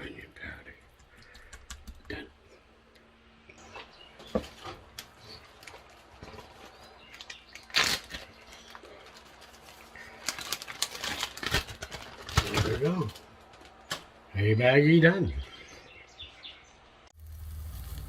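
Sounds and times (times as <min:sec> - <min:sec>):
plastic bag rustling: 0:04.3 - 0:14.1.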